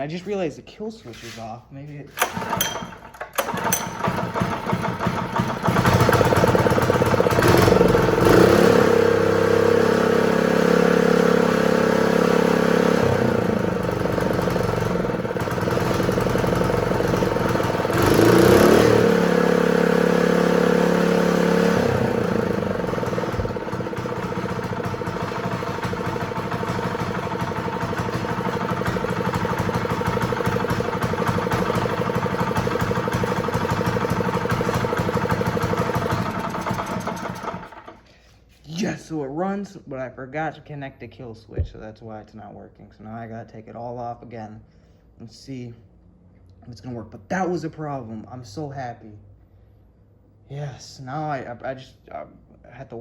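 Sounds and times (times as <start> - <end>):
small engine running and revving: 4.3 - 37.9.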